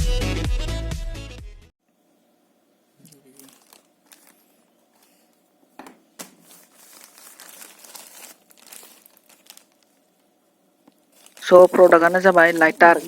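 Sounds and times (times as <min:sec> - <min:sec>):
packaging crinkling and rustling: 0:03.1 - 0:05.4, 0:06.2 - 0:13.0.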